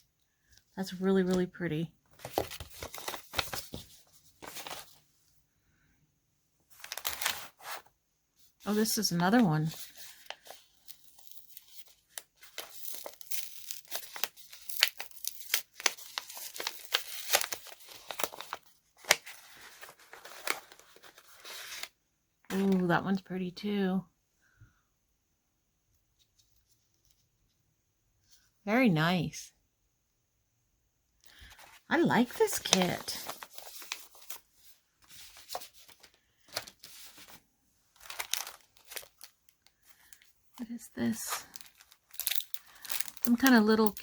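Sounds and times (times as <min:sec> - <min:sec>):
paper envelopes rustling: 0:02.0 - 0:05.1, 0:06.7 - 0:07.9, 0:08.6 - 0:22.0, 0:31.3 - 0:44.0
packaging crinkling and crackling: 0:02.2 - 0:05.0, 0:06.7 - 0:07.9, 0:08.7 - 0:21.9, 0:31.2 - 0:44.0.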